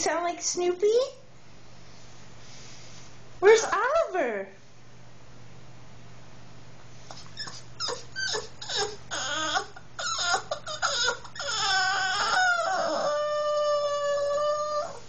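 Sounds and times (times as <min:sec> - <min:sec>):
dog whining and yowling: 0:07.1 - 0:15.0.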